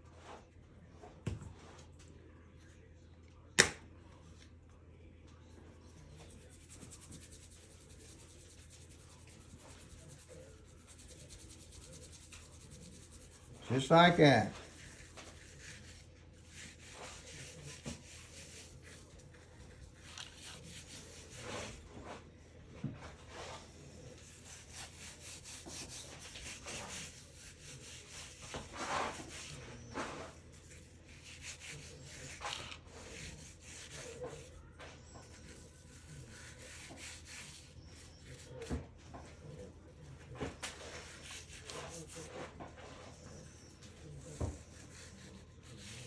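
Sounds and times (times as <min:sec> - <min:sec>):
hands rubbing seasoning onto meat: 0:06.0 - 0:22.2, 0:23.2 - 0:34.6, 0:35.3 - 0:38.6, 0:40.6 - 0:46.0.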